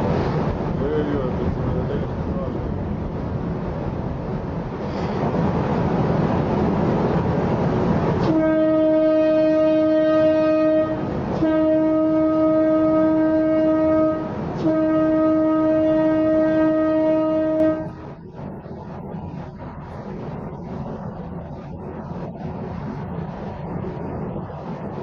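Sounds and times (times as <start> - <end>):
horn blasts: 8.2 - 18.1
loud rushing noise: 17.8 - 25.0.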